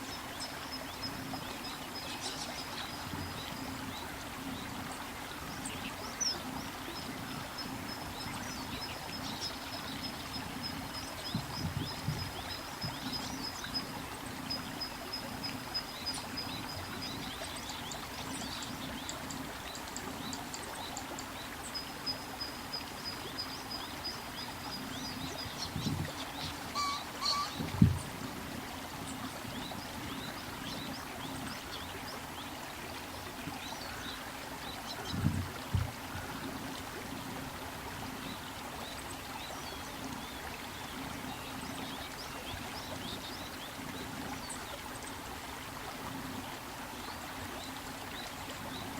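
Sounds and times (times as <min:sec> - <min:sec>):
river water rushing: 0:20.6 - 0:48.9
bird trilling: 0:26.8 - 0:27.6.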